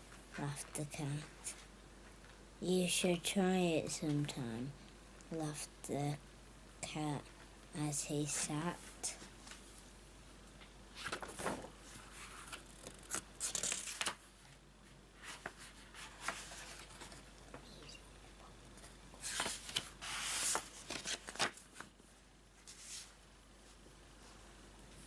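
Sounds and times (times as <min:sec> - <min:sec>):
book pages rustling: 0:10.9 - 0:17.7, 0:18.8 - 0:22.0, 0:22.6 - 0:23.2.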